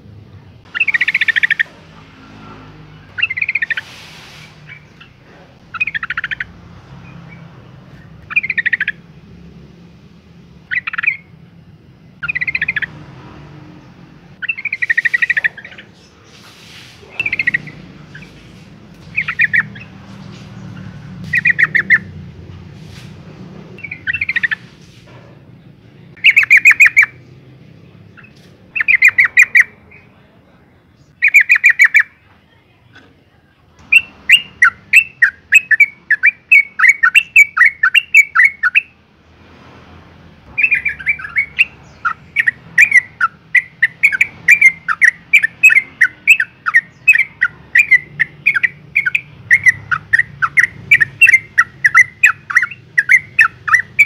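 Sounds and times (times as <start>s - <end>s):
bird rapid repeated chirps: 0.6s - 1.9s, 2.6s - 9.8s, 10.4s - 11.5s, 12.1s - 23.1s, 23.8s - 24.9s, 26.0s - 30.2s, 31.0s - 32.2s, 33.8s - 39.0s, 40.5s - 54.0s
bird harsh chattering: 0.6s - 9.2s, 10.6s - 11.4s, 12.2s - 22.2s, 23.8s - 24.8s, 26.2s - 27.3s, 28.1s - 30.2s, 31.1s - 32.2s, 33.8s - 39.0s, 40.5s - 54.0s.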